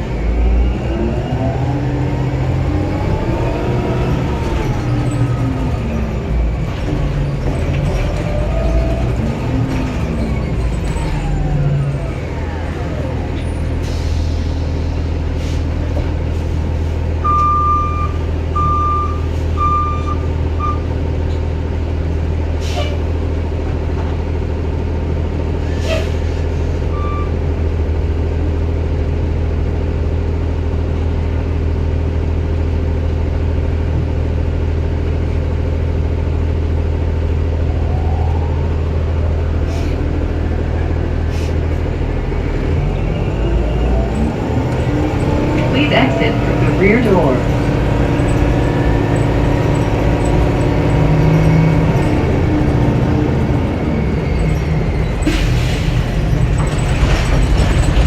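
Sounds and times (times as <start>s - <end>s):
bus engine droning: 0.0s - 58.0s
rising whine: 36.7s - 46.4s.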